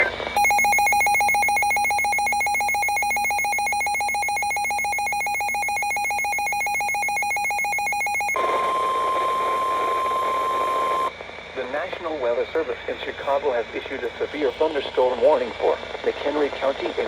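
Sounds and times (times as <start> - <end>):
warbling alarm tone: 0.4 - 11.1.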